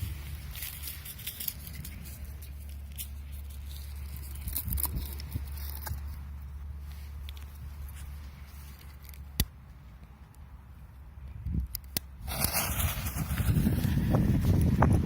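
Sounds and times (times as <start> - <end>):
wind on microphone: 11.4 - 15.0.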